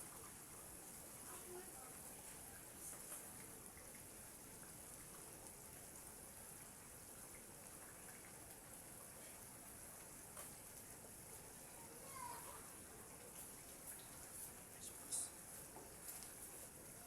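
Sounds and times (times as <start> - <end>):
sauce bubbling in a pot: 0.0 - 17.0.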